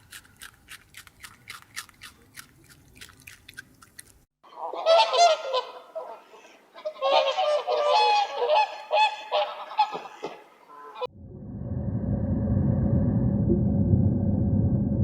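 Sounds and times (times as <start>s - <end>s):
waterfowl calling: 4.6s - 11.1s
steady low rumble: 11.1s - 15.0s.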